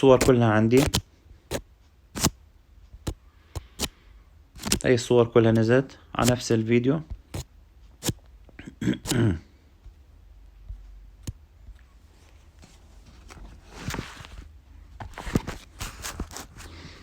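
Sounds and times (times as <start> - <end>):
short rustling: 11.9 - 17.0.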